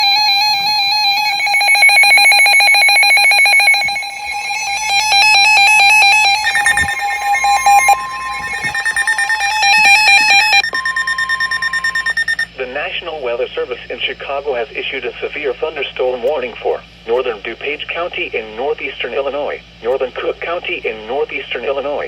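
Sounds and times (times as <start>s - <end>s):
pulsed electronic beeping: 0.0s - 12.5s
steady warning alarm tone: 0.0s - 12.5s.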